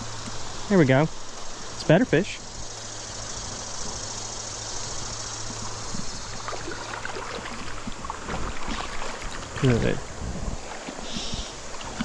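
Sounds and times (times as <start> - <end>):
stream water rushing: 0.0 - 12.0
faint ticks: 1.2 - 1.9, 2.5 - 6.6.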